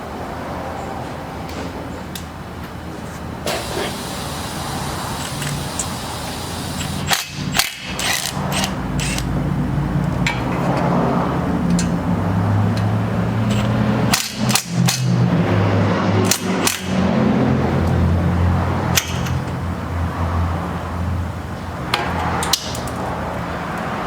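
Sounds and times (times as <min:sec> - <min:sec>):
metal tools clicking and knocking: 0:07.0 - 0:09.3, 0:12.7 - 0:15.3, 0:18.9 - 0:19.6.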